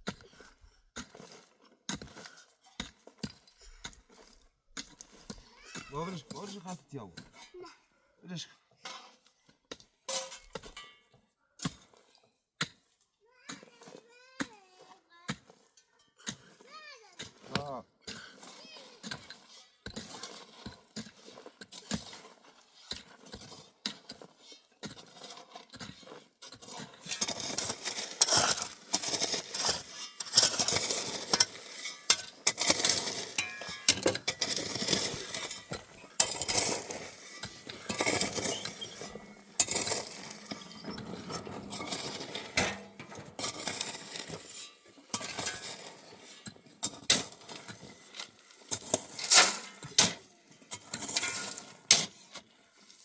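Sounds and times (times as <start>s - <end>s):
hard objects clattering: 18.1s - 52.4s.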